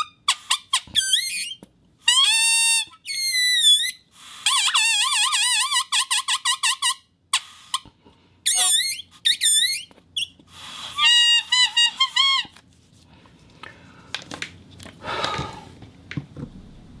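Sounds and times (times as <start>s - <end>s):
rubber whistle squeaks: 0.0s - 7.8s, 8.4s - 12.6s.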